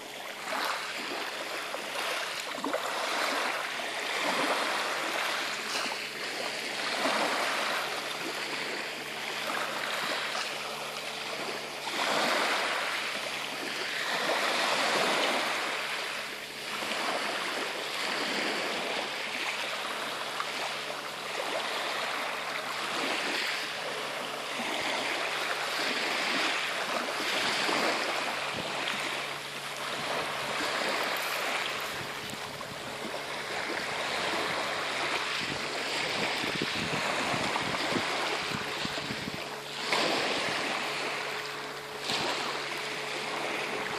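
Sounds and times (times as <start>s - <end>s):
sea water washing and splashing: 0.0s - 43.9s.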